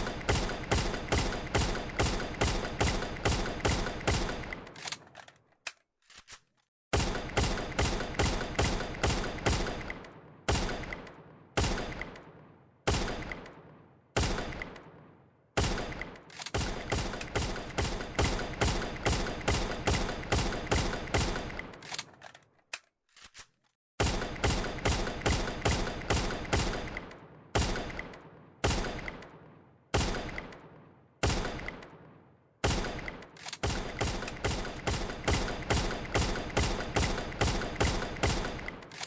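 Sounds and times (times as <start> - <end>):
machine gun rapid fire: 0.0 - 4.7, 7.0 - 12.0, 15.6 - 21.8, 24.0 - 29.2, 31.2 - 31.8, 32.6 - 39.0
single gunshots: 6.9 - 21.8, 24.0 - 38.9.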